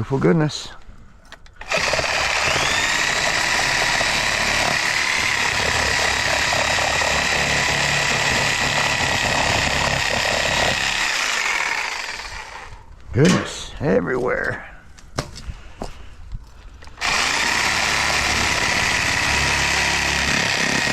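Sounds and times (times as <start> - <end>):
power tool cutting metal: 1.6 - 12.7, 17.0 - 20.9.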